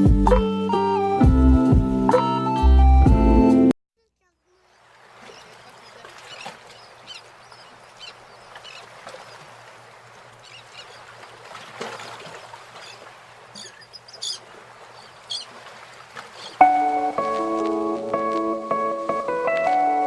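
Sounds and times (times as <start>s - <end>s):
small birds chirping: 4.0s - 16.6s.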